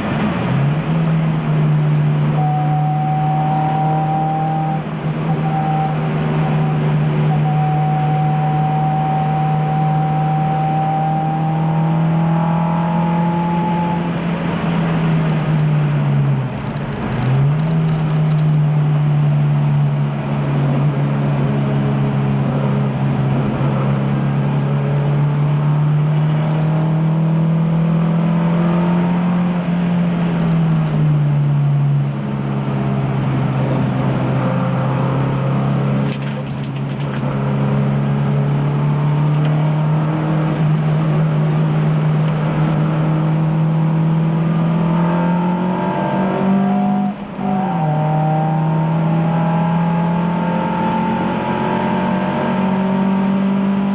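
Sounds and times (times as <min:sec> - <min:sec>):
car engine running hard: 0:00.0 - 0:53.9
high whine: 0:01.1 - 0:14.2.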